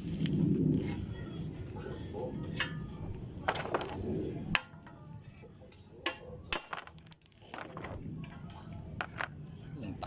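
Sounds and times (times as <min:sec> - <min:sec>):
metal clinks and knocks: 0:06.6 - 0:09.4.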